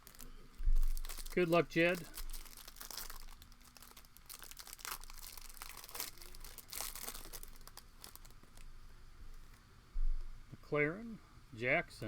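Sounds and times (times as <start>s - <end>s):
wrapper tearing and crinkling: 0.0s - 8.7s.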